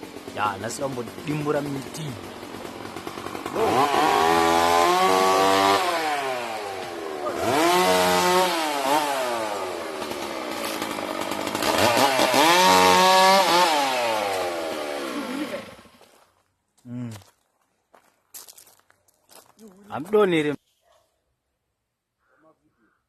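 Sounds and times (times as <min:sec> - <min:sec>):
chainsaw engine revving: 0:00.0 - 0:16.0.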